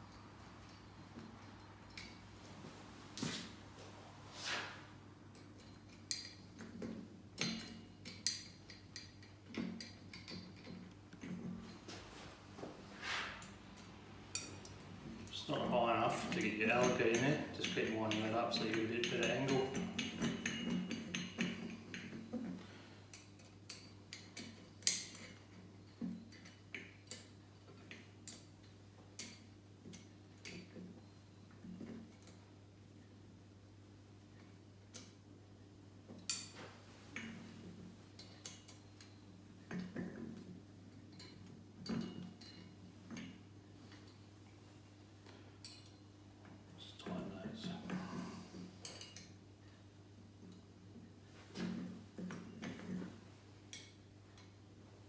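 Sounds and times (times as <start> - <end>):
low steady hum: 0.0 - 26.6
metallic clinks and knocks: 0.1 - 3.6, 5.3 - 12.0, 16.1 - 22.6.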